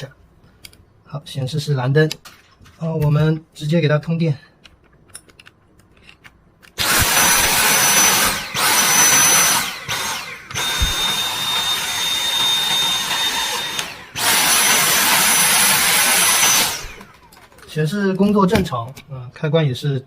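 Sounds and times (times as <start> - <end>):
vacuum cleaner motor whining: 6.8 - 17.6.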